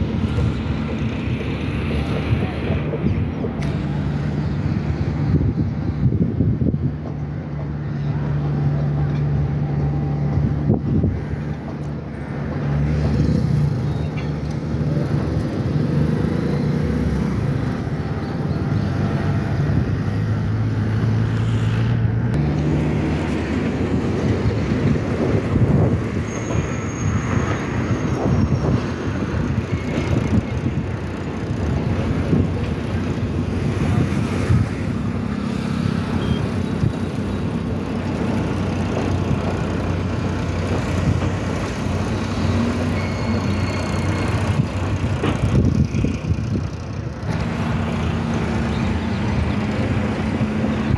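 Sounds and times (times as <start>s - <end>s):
diesel locomotive engine hum: 0.0s - 50.9s
wheels clattering on track: 0.0s - 50.9s.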